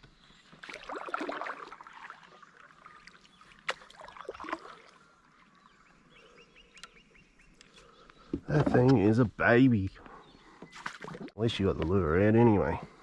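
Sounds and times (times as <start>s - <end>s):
water splashing and trickling: 0.0s - 6.1s, 10.6s - 13.0s.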